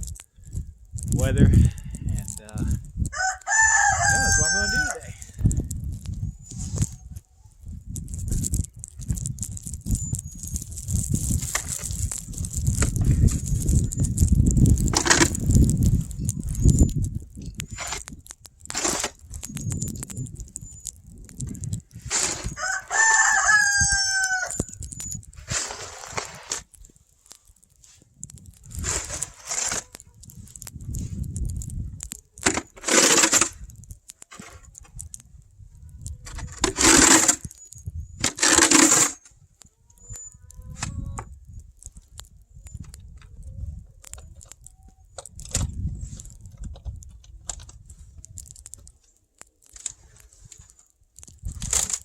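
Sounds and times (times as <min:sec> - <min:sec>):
crunching and scraping in snow: 0:00.0 - 0:41.2, 0:41.8 - 0:52.0
rooster crowing: 0:03.1 - 0:05.2, 0:22.4 - 0:24.7
shovel scraping through snow: 0:17.7 - 0:18.0, 0:18.7 - 0:19.2, 0:22.0 - 0:22.6, 0:25.4 - 0:26.7, 0:28.8 - 0:29.9, 0:32.5 - 0:33.5, 0:36.4 - 0:37.5, 0:38.2 - 0:39.2.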